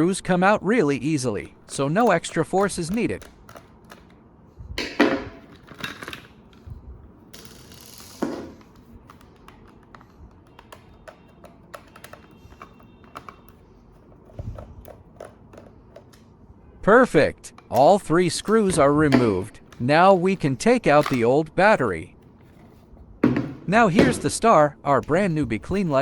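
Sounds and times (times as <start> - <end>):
screwdriver clicks and taps: 2.0 - 4.2, 8.6 - 13.6, 14.3 - 16.3.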